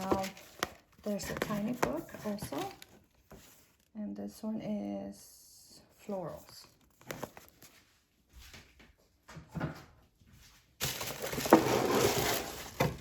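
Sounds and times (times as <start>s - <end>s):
packaging rustling: 0.0s - 3.9s, 6.8s - 7.7s, 10.8s - 13.0s
wrapping crinkling and crushing: 0.0s - 3.9s, 10.8s - 13.0s.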